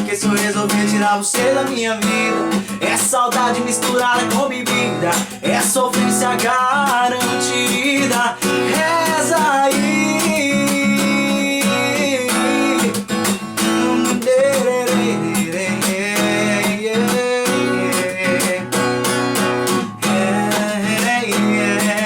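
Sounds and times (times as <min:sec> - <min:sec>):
acoustic guitar strumming: 0:00.0 - 0:22.0.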